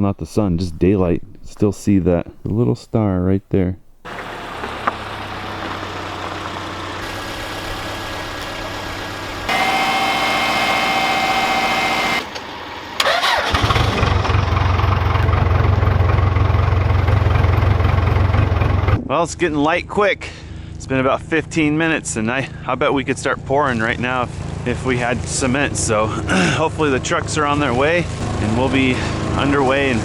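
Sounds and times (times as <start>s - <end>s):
deep engine rumble: 3.8s - 19.0s
steady whine: 4.1s - 13.3s
engine idling: 4.1s - 19.0s.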